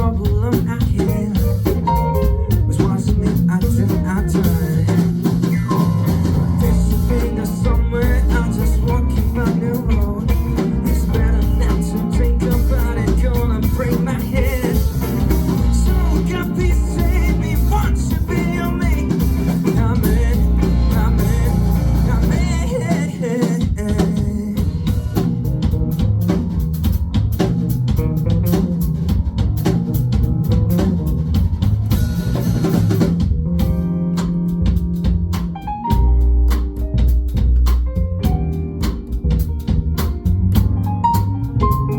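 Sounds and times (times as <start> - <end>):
person singing: 0.0 - 25.2
band playing drums and guitar: 0.0 - 41.9.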